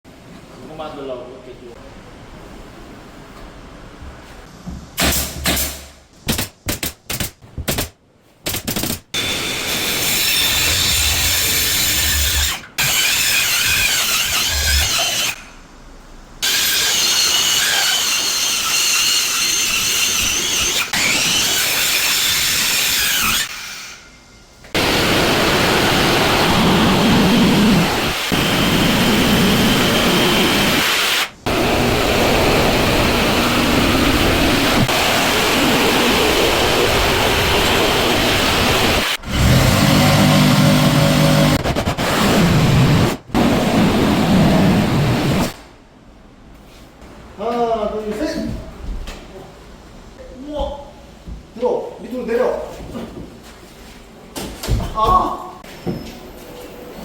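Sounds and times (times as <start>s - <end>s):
power tools whining on wood: 31.5s - 41.6s.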